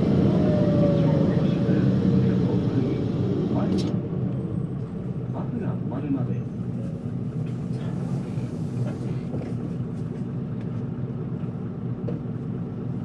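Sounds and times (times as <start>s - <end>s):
bus diesel engine drone: 0.0s - 5.6s.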